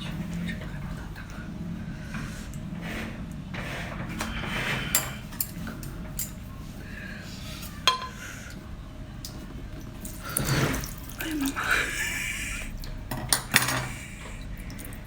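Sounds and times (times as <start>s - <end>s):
low background hum: 0.0s - 15.0s
dishes and utensils clinking: 4.0s - 6.5s, 7.5s - 8.4s, 13.1s - 14.1s.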